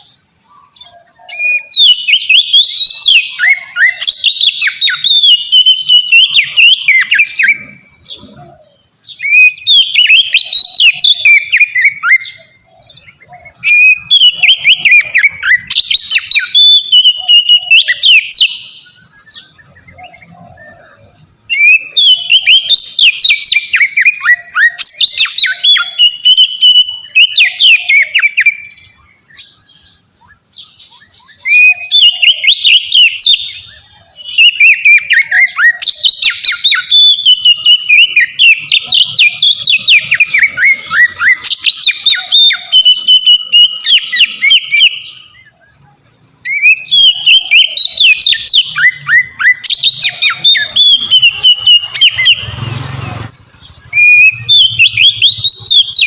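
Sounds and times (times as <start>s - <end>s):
bird singing whistles and trills: 0.0s - 56.0s.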